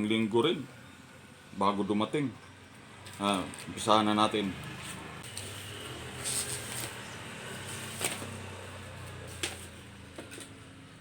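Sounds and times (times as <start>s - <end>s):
packaging clicks and rustles: 5.3s - 8.5s, 9.1s - 10.6s.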